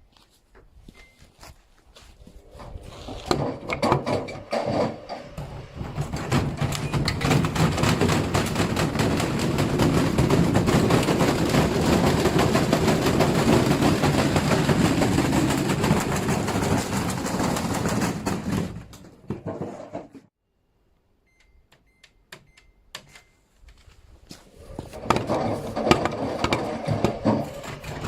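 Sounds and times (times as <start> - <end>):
short beeps: 0.9 - 1.3, 21.2 - 23.5
washing machine knocking and rattling: 3.3 - 20.2, 25.0 - 28.0.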